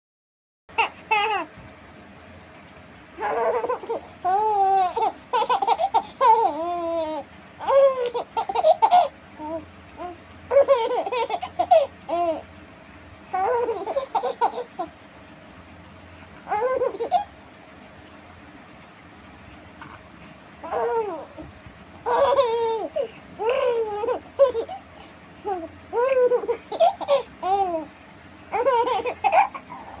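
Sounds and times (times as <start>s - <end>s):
baby laughing and babbling: 0.7s - 1.6s, 3.2s - 12.5s, 13.3s - 15.0s, 16.4s - 17.4s, 20.6s - 30.0s.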